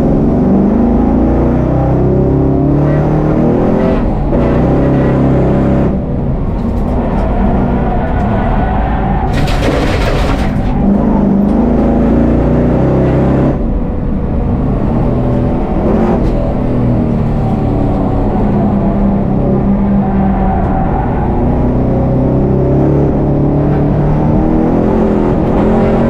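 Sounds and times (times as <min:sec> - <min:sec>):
race car engine running hard: 0:00.0 - 0:26.0.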